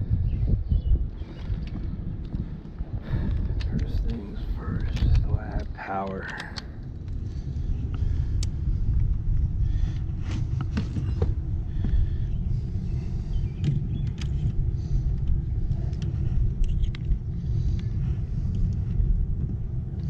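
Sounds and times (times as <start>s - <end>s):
low rumble: 0.0s - 20.0s
light clicks and taps: 3.3s - 7.2s.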